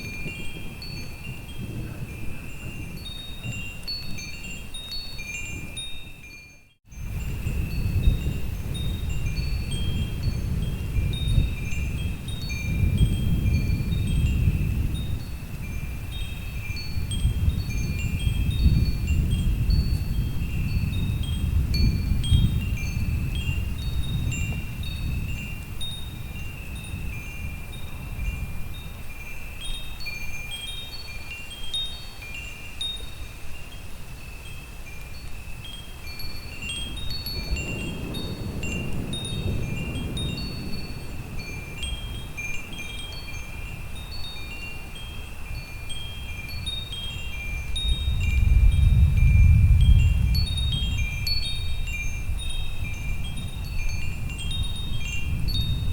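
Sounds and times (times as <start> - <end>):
wind chimes tinkling: 0.0 - 55.9
thunder rumbling: 36.9 - 42.4, 48.0 - 51.2.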